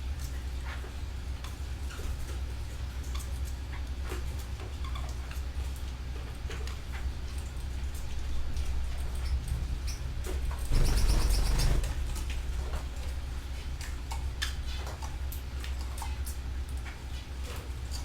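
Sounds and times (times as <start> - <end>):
canaries chirping: 10.7 - 12.0.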